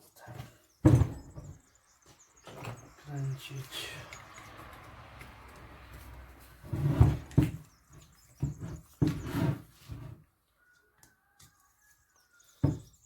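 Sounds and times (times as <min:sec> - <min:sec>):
metal knocks and clatters: 0:00.8 - 0:01.7.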